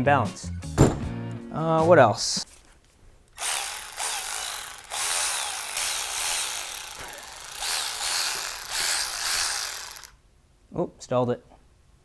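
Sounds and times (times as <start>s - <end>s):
cordless ratchet motor whirring: 3.4s - 10.2s.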